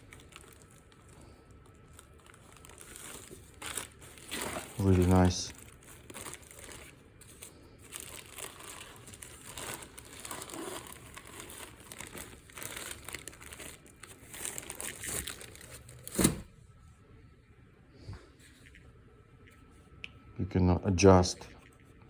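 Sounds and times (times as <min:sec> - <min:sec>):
packaging crinkling and rustling: 0:00.0 - 0:16.5.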